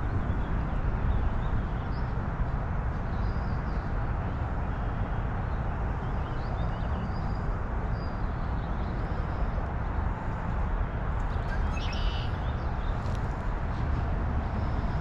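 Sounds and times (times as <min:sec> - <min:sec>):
low outdoor rumble: 0:00.0 - 0:15.0
faint bird chirps: 0:11.4 - 0:12.5.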